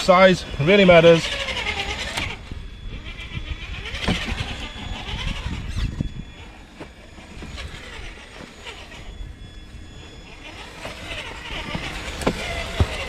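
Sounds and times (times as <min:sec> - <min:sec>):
electric motor whirring: 0:00.0 - 0:13.0.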